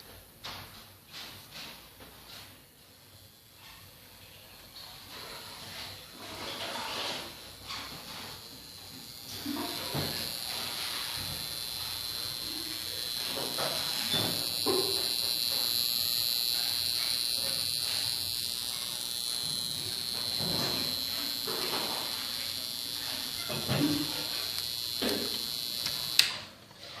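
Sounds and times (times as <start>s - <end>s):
high-pitched whine: 7.7s - 26.2s
hiss: 8.8s - 18.4s, 19.0s - 26.2s.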